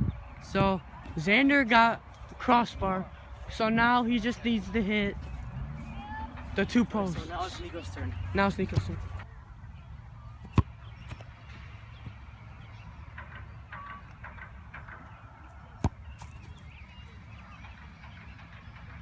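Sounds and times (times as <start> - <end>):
soccer ball thuds: 4.4 - 9.2.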